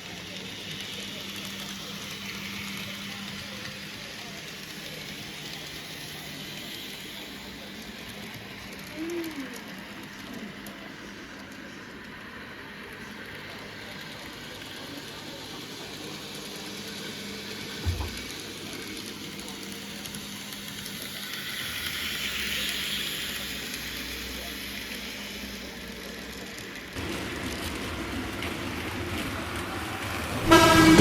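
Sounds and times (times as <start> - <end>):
model train running: 0.0 - 31.0
knock: 17.8 - 18.3.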